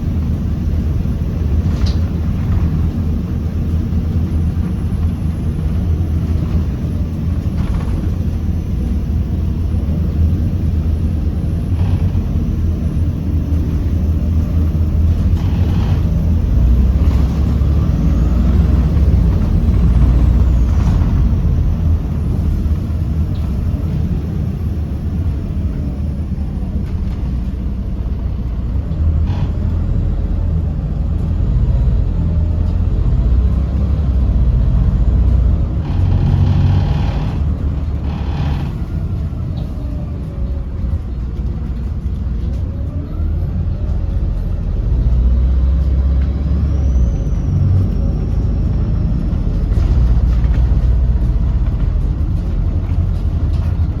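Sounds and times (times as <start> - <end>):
bus diesel engine rumbling: 0.0 - 54.0
turbo whine: 34.7 - 39.8.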